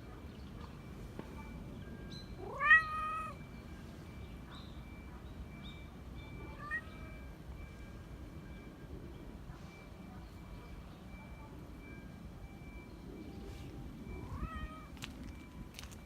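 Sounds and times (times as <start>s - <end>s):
cat meowing: 2.4s - 3.4s, 14.2s - 15.0s.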